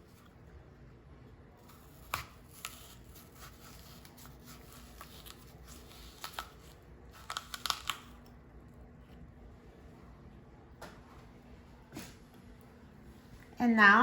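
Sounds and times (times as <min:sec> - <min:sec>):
knife scraping apple: 0:01.6 - 0:07.7.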